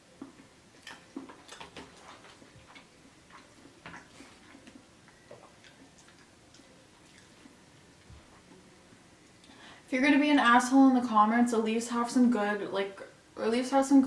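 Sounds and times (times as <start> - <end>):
eating clicks and crackles: 0.2 - 7.6.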